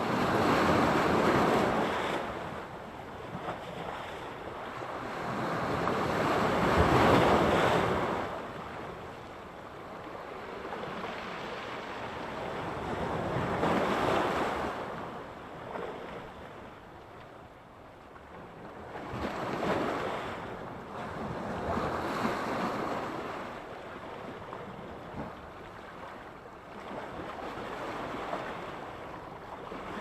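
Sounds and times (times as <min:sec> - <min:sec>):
waves breaking on shore: 0:00.0 - 0:16.8, 0:18.7 - 0:30.0.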